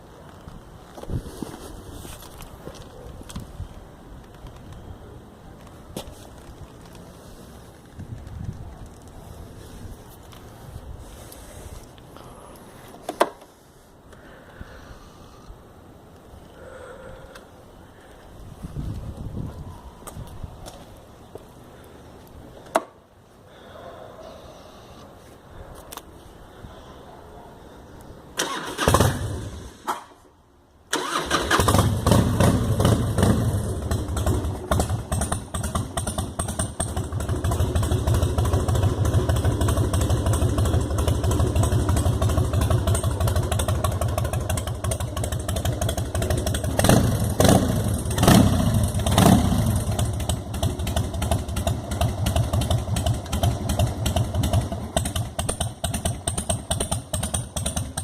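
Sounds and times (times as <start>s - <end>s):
motorcycle engine cranking: 28.4s - 29.9s, 30.9s - 58.0s
motorcycle engine idling: 31.0s - 58.0s.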